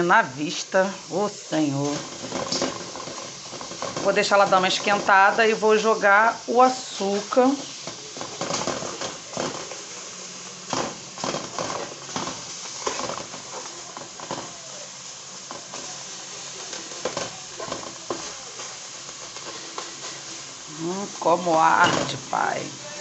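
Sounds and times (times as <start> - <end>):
onion sizzling in a pan: 0.0 - 23.0
utensil scraping a pan: 1.7 - 10.0, 10.6 - 14.6, 15.4 - 20.6.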